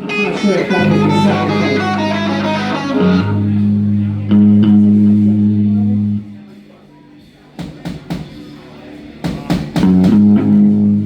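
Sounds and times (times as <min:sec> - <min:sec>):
amplified bass and guitar low note: 0:00.0 - 0:06.4, 0:09.8 - 0:11.0
drum kit hits: 0:09.2 - 0:10.7.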